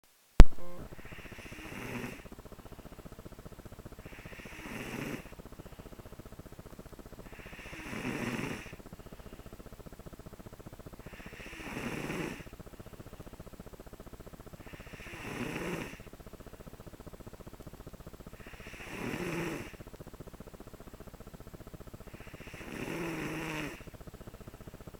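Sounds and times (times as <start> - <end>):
child snoring: 1.0 - 2.3, 4.0 - 5.4, 7.3 - 8.8, 11.0 - 12.5, 14.6 - 16.1, 18.4 - 19.8, 22.1 - 23.9.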